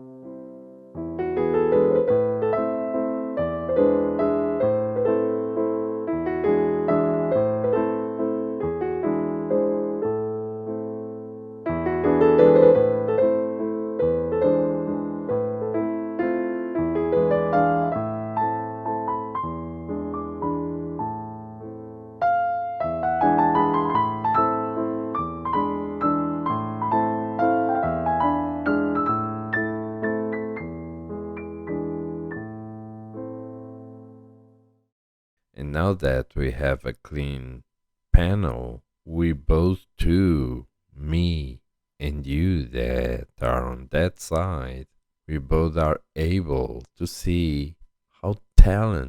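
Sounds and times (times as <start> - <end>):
gentle piano melody: 0.0 - 34.6.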